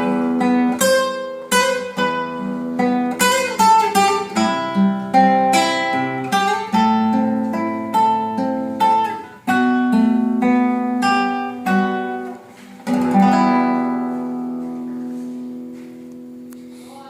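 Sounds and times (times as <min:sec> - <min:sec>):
classical guitar plucked and strummed: 0:00.0 - 0:16.9.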